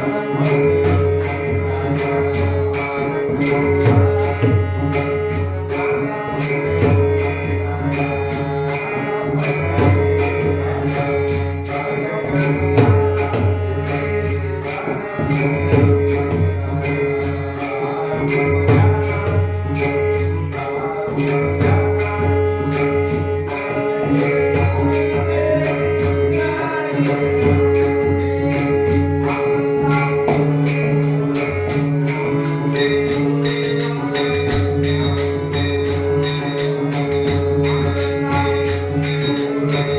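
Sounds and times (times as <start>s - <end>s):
held drone tone: 0.0s - 39.9s
fast jingling beat: 18.3s - 39.9s.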